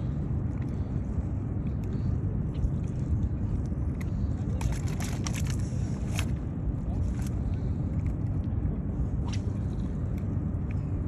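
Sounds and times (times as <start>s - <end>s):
low outdoor rumble: 0.0s - 11.0s.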